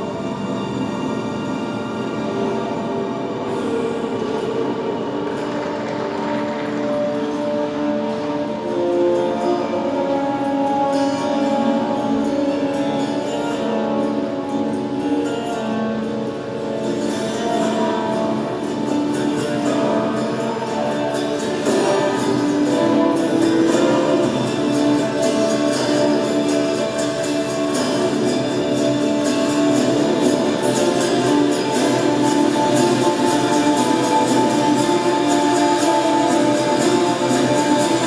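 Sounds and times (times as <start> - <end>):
held instrumental notes: 0.0 - 38.0
people singing: 18.0 - 38.0
tapping percussion beat: 19.1 - 38.0.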